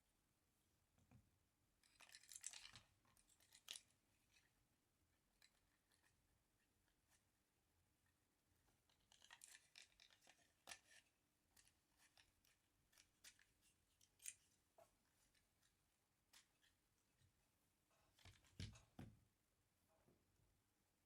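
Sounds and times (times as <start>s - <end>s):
light scraping of small parts: 1.8s - 4.6s, 8.8s - 19.0s
small plastic parts clicking: 8.9s - 14.5s.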